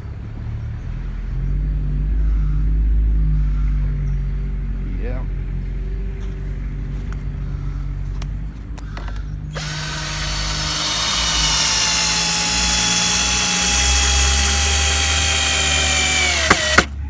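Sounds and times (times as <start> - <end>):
low engine hum: 0.0 - 17.0
power tool motor whine: 9.5 - 17.0.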